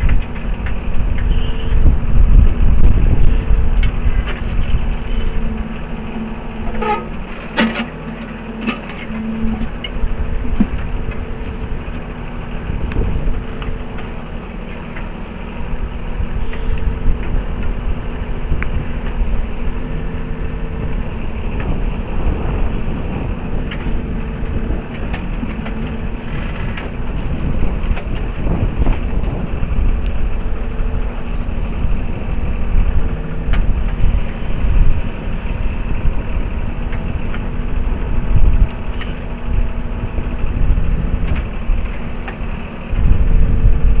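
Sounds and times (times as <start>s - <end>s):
tractor diesel engine running: 0.0s - 44.0s.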